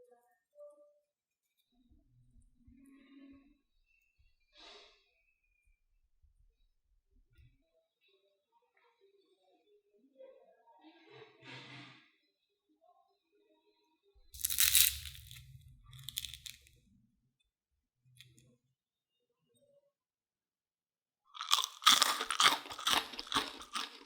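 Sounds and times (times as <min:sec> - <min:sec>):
crispy snack crunching: 0:14.4 - 0:16.7, 0:21.4 - 0:24.0.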